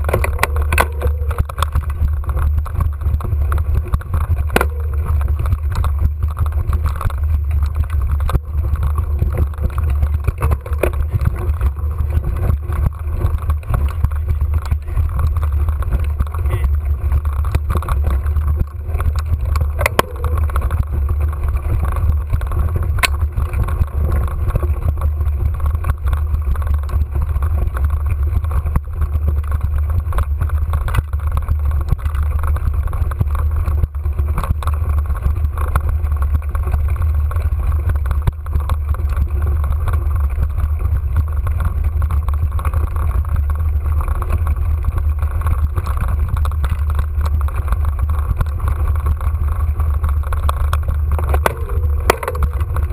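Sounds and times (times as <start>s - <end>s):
bike clicks and rattles: 0.0s - 52.9s
low rumble of wind: 0.0s - 52.9s
tyres crunching: 0.0s - 52.9s.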